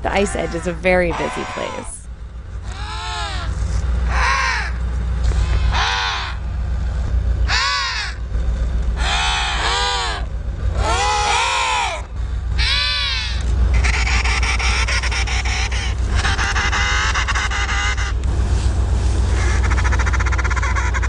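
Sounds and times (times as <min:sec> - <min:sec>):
steady low hum: 0:00.0 - 0:21.0
penguins squawking: 0:00.1 - 0:04.7, 0:05.7 - 0:06.4, 0:07.5 - 0:08.2, 0:09.0 - 0:10.2, 0:10.8 - 0:18.2, 0:19.4 - 0:21.0.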